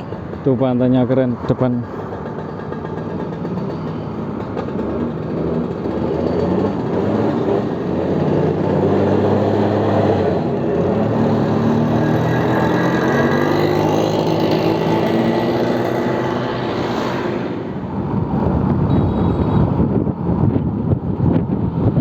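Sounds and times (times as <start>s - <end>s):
wind and road noise: 0.0s - 22.0s
scooter engine running: 2.0s - 9.0s.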